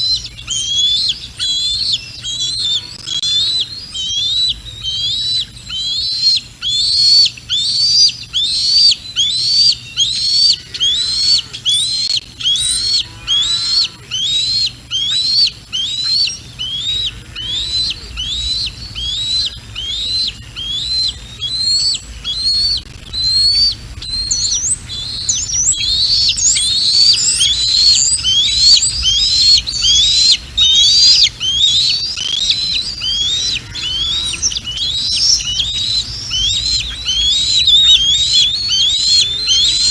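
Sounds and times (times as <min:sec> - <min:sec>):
eagle high chirping calls: 0:00.0 - 0:39.9
wind rumble on microphone: 0:16.3 - 0:39.9.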